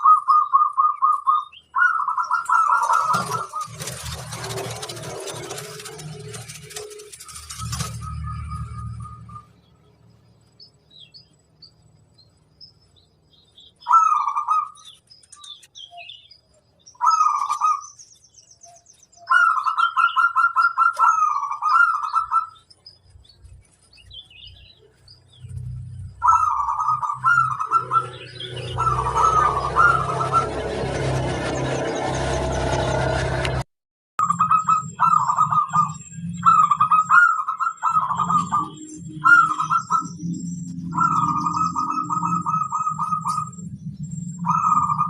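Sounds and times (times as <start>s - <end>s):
dove cooing: 0.0s - 8.3s, 13.9s - 14.8s, 26.2s - 30.6s, 34.3s - 40.2s, 40.9s - 43.5s, 44.4s - 45.0s
small birds chirping: 0.0s - 30.9s, 34.2s - 45.0s.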